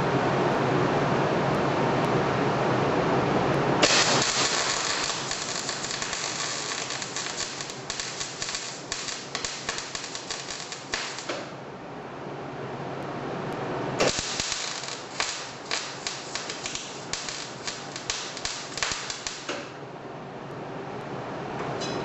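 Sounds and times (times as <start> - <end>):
steady machine noise: 0.0 - 19.9
welding arc hissing and crackling: 3.8 - 11.6, 14.0 - 19.8.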